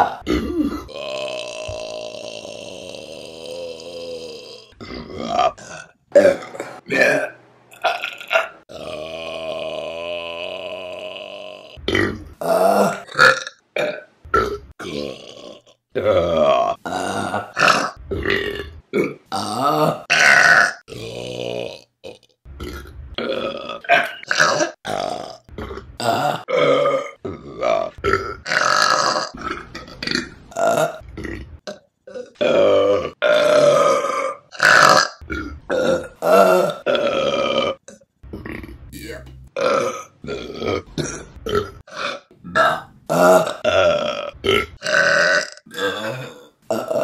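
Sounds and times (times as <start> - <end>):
women burping: 0.0 - 7.3.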